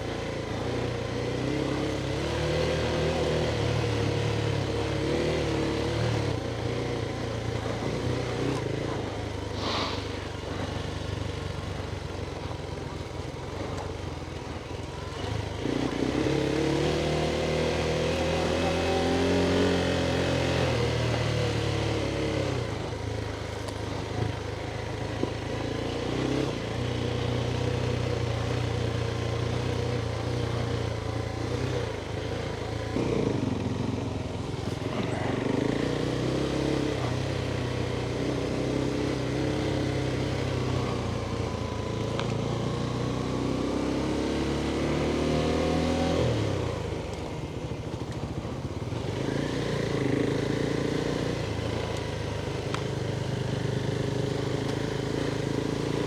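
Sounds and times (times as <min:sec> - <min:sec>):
motorcycle engine revving: 0:14.9 - 0:56.0.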